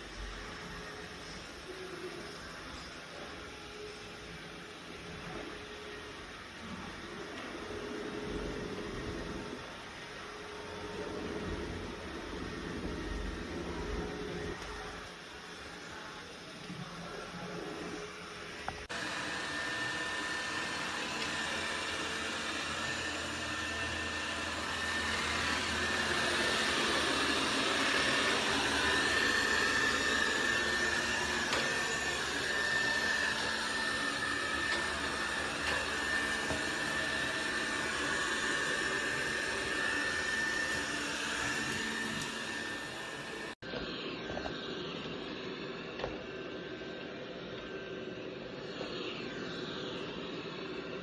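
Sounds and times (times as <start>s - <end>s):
robot vacuum suction motor: 16.6s - 51.0s.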